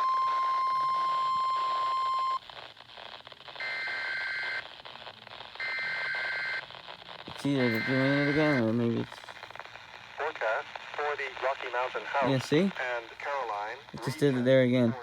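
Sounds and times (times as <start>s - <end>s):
electronic beeps: 7.5s - 8.6s.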